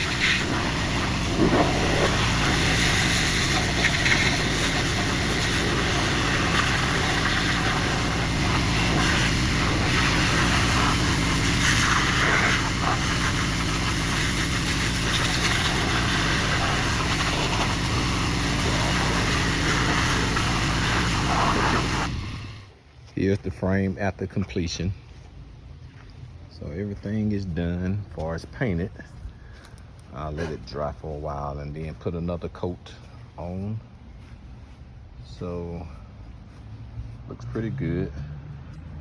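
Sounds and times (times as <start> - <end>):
water spray hissing: 0.0 - 22.7
pressure washer engine droning: 0.0 - 22.8.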